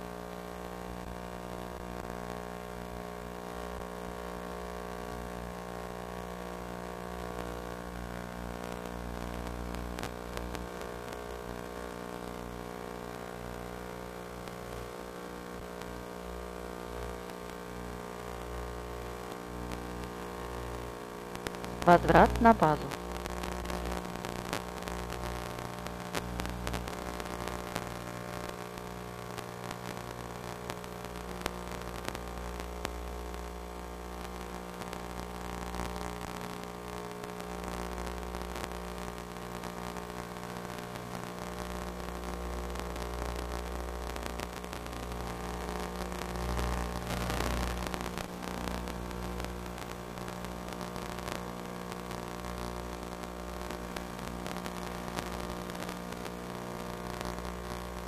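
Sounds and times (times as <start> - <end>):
static hiss: 0.0 - 58.0
electrical hum: 14.5 - 39.2.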